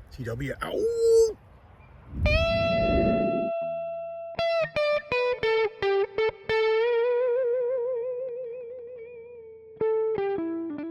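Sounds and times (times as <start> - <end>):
electric guitar playing: 2.2 - 10.9.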